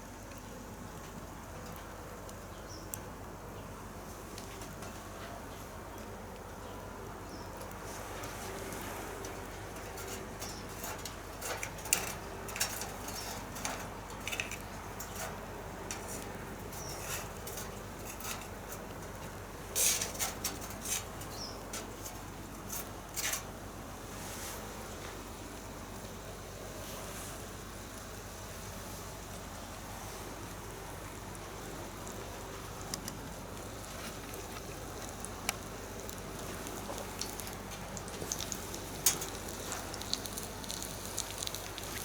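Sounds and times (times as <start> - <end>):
faint steady hiss: 0.0 - 42.0
campfire crackling and popping: 30.6 - 42.0.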